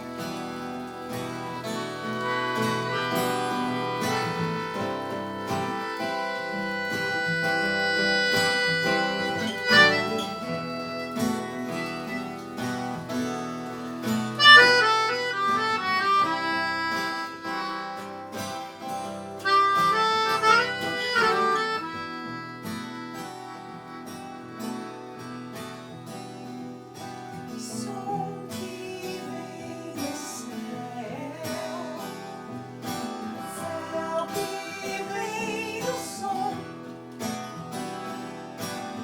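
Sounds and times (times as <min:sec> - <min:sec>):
instrumental music with held chords: 0:00.0 - 0:39.0
quick runs of notes: 0:00.1 - 0:18.8.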